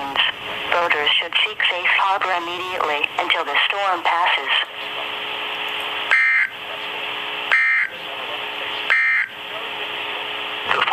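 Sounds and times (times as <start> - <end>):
faint steady hum: 0.0 - 10.9
radio static hiss: 0.0 - 10.9
digital data tone bursts: 6.1 - 6.5, 7.5 - 8.0, 8.9 - 9.3.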